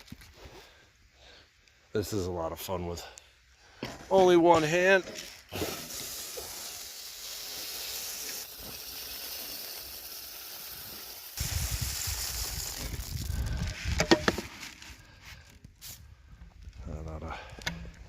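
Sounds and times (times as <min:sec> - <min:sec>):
birdseed pouring hiss: 0:05.5 - 0:15.1
wind rumble on microphone: 0:11.4 - 0:14.1.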